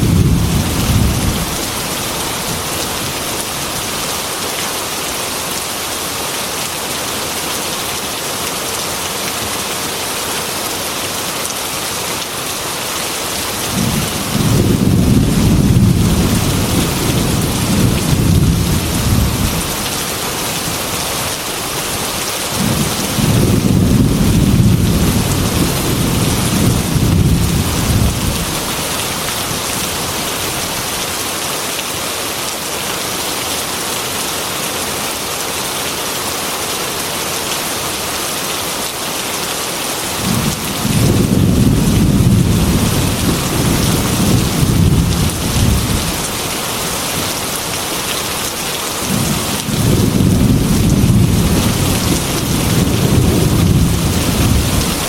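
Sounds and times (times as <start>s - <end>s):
thunder rolling: 0.0s - 1.8s, 13.7s - 19.8s, 22.6s - 28.8s, 40.2s - 46.2s, 49.1s - 55.0s
heavy rain on a metal roof: 0.0s - 55.0s.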